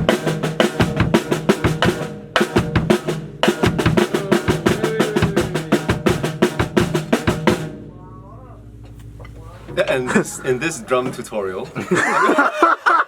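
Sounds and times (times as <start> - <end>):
drum kit fast beat: 0.0 - 7.9.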